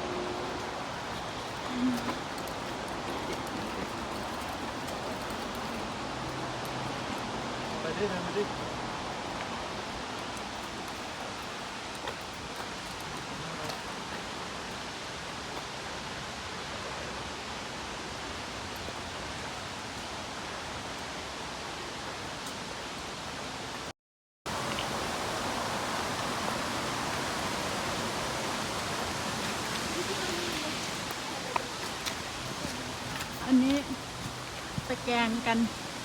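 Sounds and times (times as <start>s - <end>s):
waterfall rushing: 0.0s - 23.7s, 24.5s - 36.0s.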